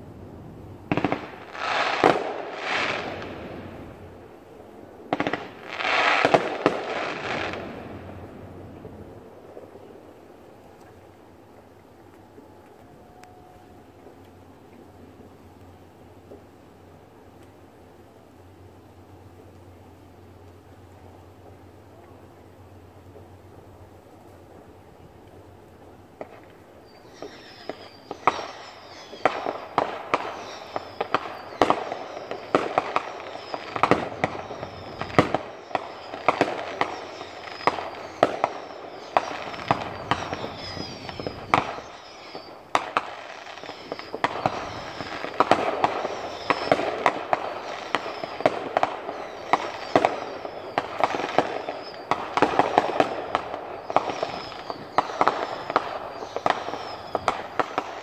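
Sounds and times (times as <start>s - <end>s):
fireworks bangs and crackle: 0.7s - 10.3s, 26.2s - 58.0s
fireworks falling whistles: 0.8s - 4.3s, 5.1s - 9.9s, 26.2s - 58.0s.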